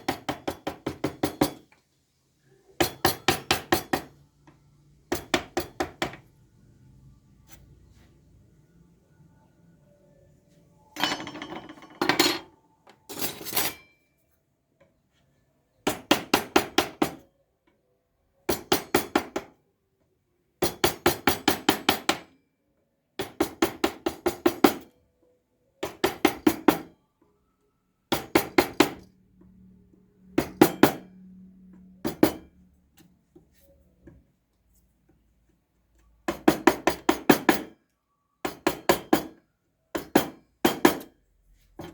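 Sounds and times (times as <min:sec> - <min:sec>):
mallet striking chisel into wood: 0:00.0 - 0:01.6.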